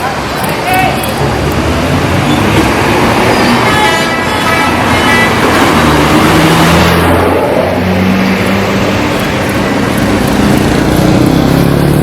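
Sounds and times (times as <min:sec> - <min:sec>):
traffic noise: 0:00.0 - 0:12.0
multi-tone bus horn: 0:03.3 - 0:06.3
bus engine running low: 0:05.3 - 0:12.0.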